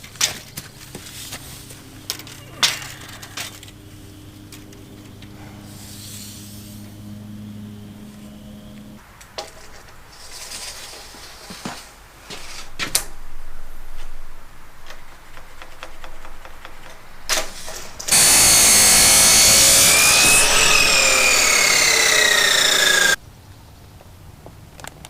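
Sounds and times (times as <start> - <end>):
power drill driving a screw: 18.1 - 23.2.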